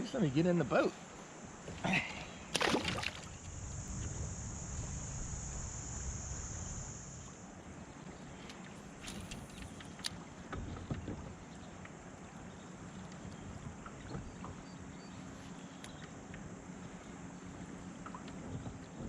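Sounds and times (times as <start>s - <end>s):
insects buzzing: 0.0s - 13.1s
water rumbling against kayak: 1.0s - 19.0s.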